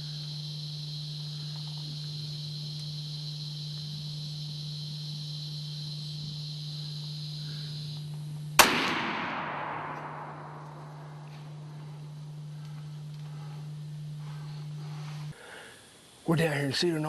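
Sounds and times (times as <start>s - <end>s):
insects chirring: 0.0s - 17.0s
steady low hum: 0.0s - 17.0s
rifle shot: 8.6s - 11.2s.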